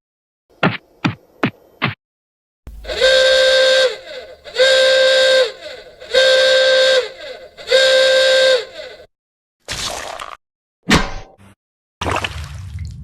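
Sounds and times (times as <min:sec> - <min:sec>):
steam train whistle toots: 0:02.7 - 0:09.1.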